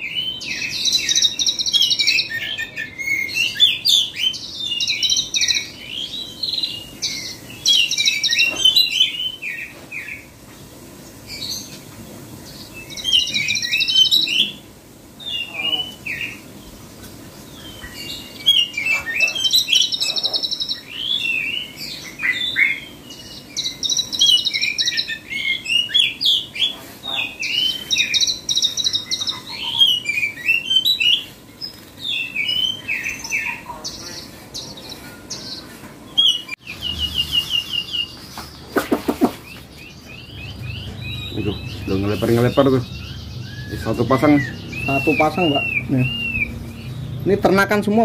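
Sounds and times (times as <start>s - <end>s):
songbird singing: 0.0s - 48.0s
harsh bird call: 12.5s - 16.7s, 17.6s - 31.4s, 32.0s - 48.0s.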